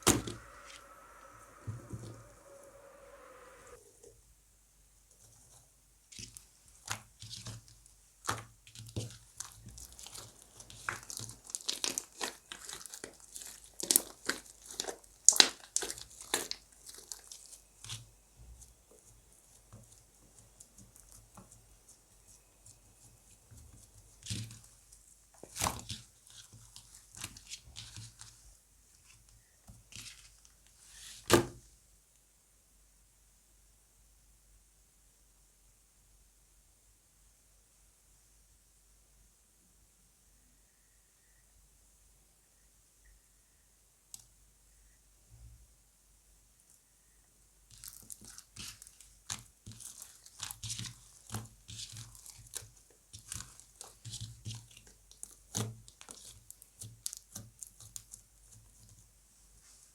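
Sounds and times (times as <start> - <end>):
slime sticky crackles and pops: 8.2 - 18.1, 47.7 - 58.6.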